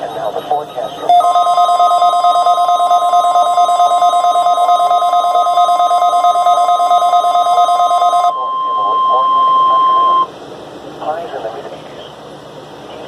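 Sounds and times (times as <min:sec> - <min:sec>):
broadcast speech: 0:00.0 - 0:01.5
steady alarm tone: 0:00.0 - 0:10.3.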